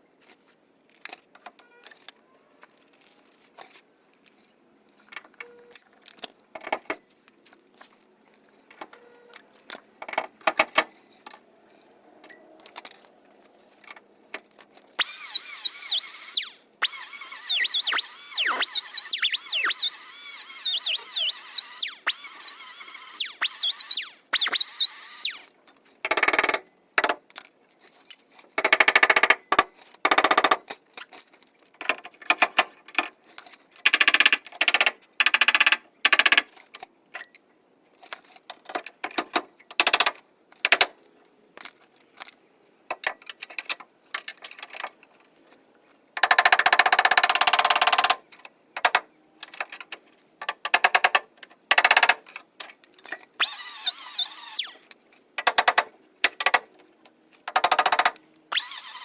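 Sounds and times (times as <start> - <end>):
stud welder zapping: 15.0 - 25.5, 53.4 - 54.9, 58.5 - 59.0.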